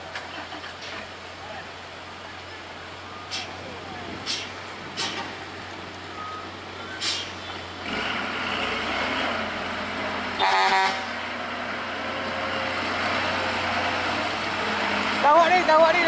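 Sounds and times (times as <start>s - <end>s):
heavy vehicle traffic: 0.0s - 16.0s
horn blast: 10.4s - 11.2s.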